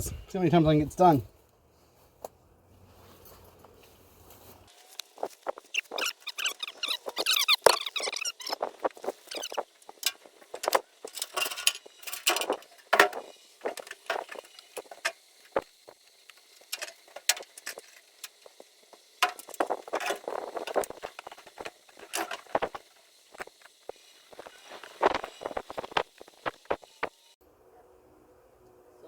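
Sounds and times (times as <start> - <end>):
gear clinking and rattling: 5.8 - 15.6.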